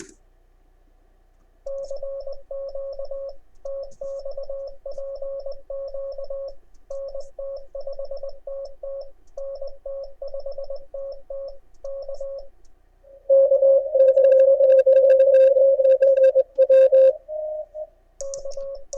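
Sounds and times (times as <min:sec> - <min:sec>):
morse code tone: 0:01.7 - 0:12.5, 0:13.1 - 0:18.9.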